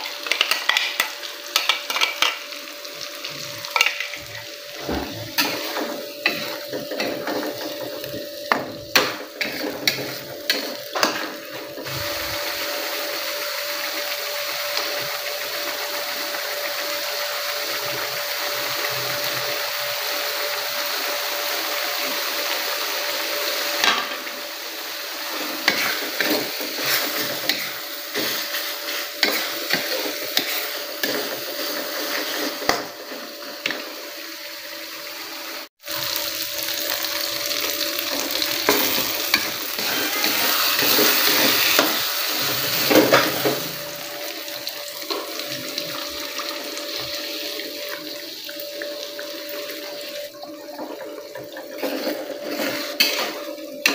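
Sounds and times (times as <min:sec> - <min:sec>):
food sizzling in hot oil: 0:00.0 - 0:53.9
spatula scraping a pan: 0:04.8 - 0:12.0, 0:25.3 - 0:33.7, 0:38.2 - 0:43.8, 0:50.8 - 0:53.9.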